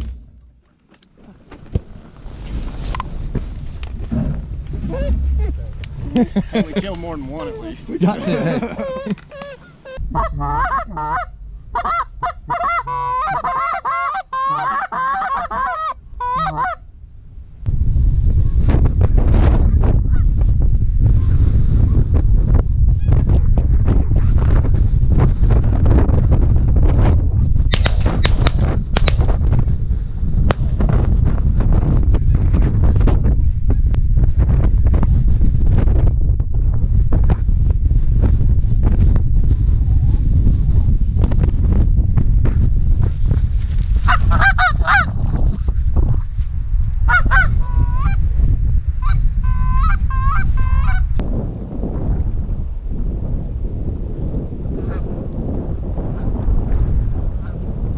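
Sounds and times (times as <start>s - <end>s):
wind buffeting microphone: 0.0s - 57.9s
geese honking and clucking: 6.6s - 16.9s, 44.0s - 45.2s, 47.1s - 48.2s, 49.0s - 51.1s
short sharp cracks: 27.7s - 29.3s.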